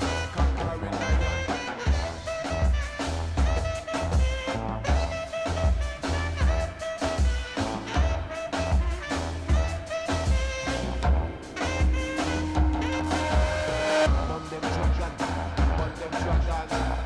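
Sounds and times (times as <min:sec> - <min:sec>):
drum and bass beat: 0:00.0 - 0:17.0
funk jazz music from vinyl: 0:00.0 - 0:17.0
horns: 0:00.0 - 0:17.0.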